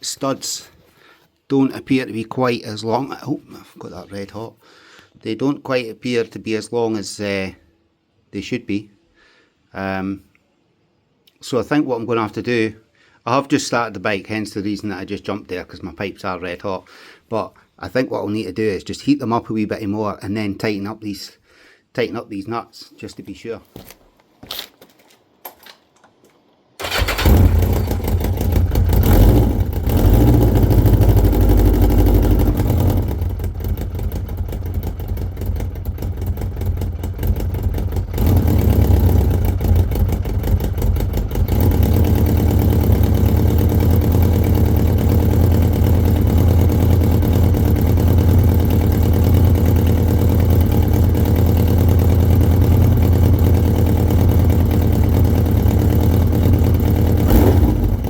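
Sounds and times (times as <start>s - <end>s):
motorcycle engine idling: 26.8s - 58.0s.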